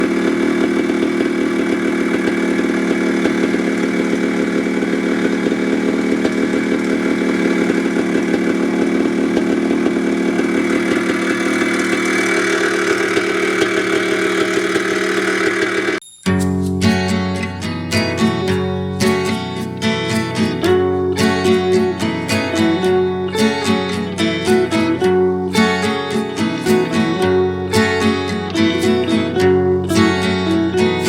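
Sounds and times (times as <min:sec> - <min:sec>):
dirt bike engine running: 0:00.0 - 0:16.0, 0:18.0 - 0:31.0
strummed acoustic guitar music: 0:16.2 - 0:31.0.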